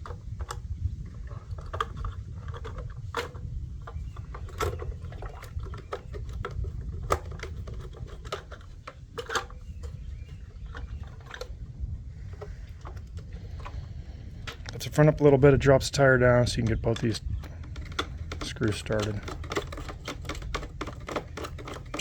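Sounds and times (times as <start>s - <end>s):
steady low hum: 0.0s - 22.0s
screwdriver clicking on plastic: 16.5s - 22.0s.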